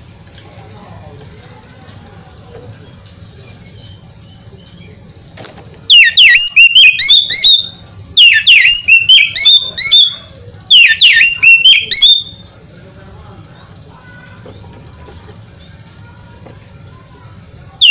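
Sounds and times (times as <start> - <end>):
bird whistling song: 3.1 - 4.9, 5.9 - 12.5.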